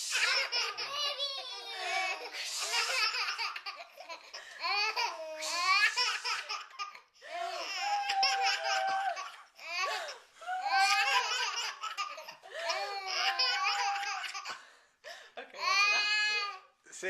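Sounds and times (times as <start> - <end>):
babies giggling: 0.0 - 14.6.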